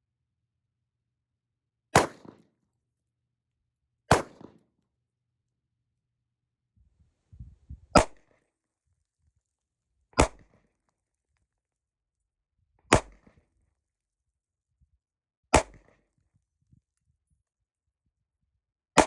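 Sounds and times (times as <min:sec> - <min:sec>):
revolver gunshots: 0:02.0 - 0:02.4, 0:04.1 - 0:04.6.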